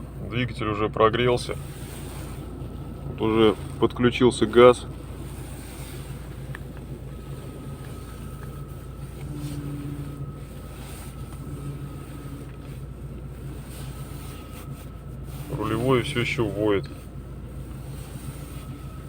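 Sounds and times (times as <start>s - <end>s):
car engine idling: 0.0s - 19.0s
power steering pump whine: 0.0s - 19.0s.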